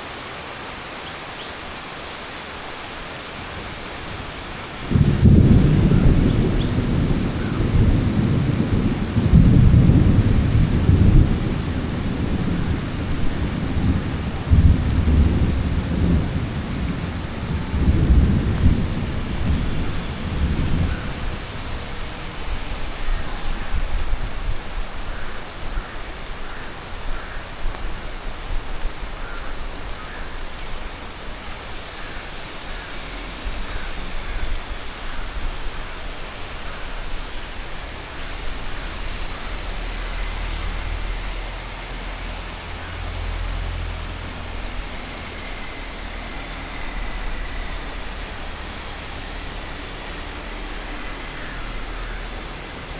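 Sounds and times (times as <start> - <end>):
heavy rain falling: 0.0 - 52.9
rumble of thunder: 3.5 - 26.0, 28.4 - 52.9.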